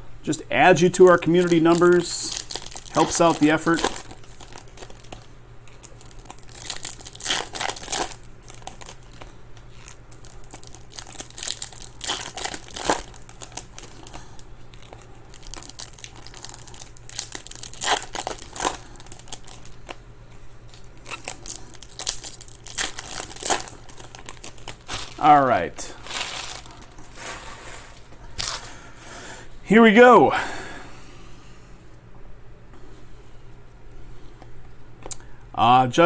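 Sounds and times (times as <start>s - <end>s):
foil wrappers crinkling and tearing: 0.7s - 28.8s
quiet handling of packs: 0.7s - 29.7s.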